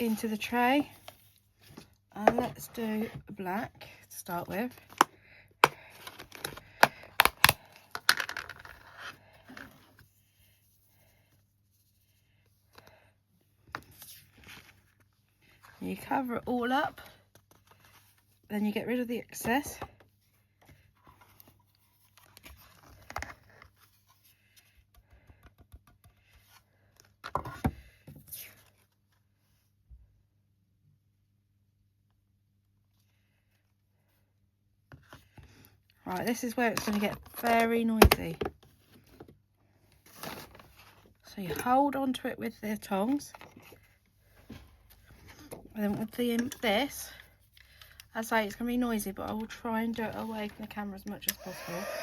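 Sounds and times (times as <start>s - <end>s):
small hard items clicking and knocking: 4.9s - 8.8s
card rustling and scraping: 5.9s - 10.9s, 13.7s - 15.8s, 20.7s - 24.8s.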